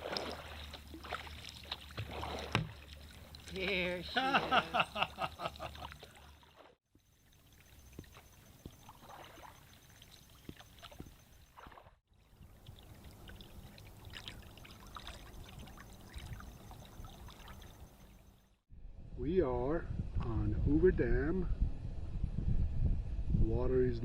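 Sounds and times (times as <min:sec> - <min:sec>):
paddle splashing in water: 0:00.0 - 0:06.8, 0:07.5 - 0:18.0.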